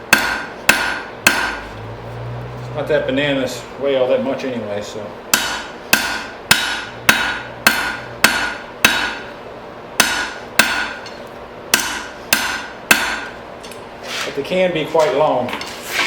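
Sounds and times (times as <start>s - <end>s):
hammer striking steel on anvil: 0.1s - 1.6s, 5.3s - 9.3s, 10.0s - 13.4s.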